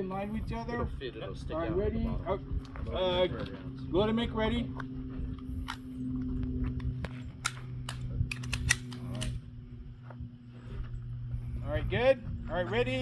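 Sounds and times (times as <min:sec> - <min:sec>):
steady low hum: 0:00.0 - 0:13.0
handguns being loaded: 0:06.8 - 0:09.4.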